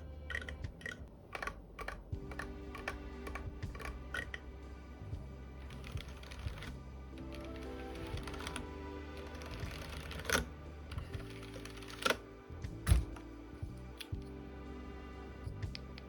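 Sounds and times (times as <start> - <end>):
background music: 0.0 - 16.0
mechanical keyboard typing: 0.3 - 4.4, 5.7 - 12.2.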